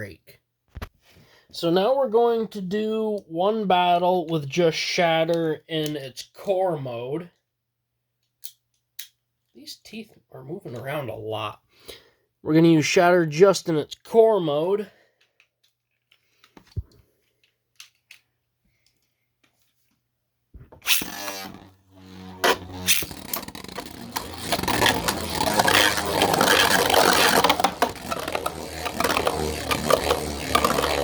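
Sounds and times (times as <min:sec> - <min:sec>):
spinning tops launched whir: 0:20.8 - 0:31.0
spinning tops clashing and rattling: 0:22.9 - 0:31.0.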